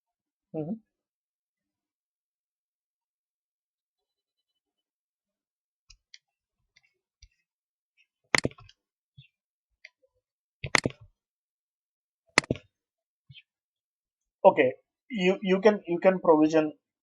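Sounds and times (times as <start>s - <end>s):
sharp clicks: 8.3s - 8.8s, 10.6s - 11.0s.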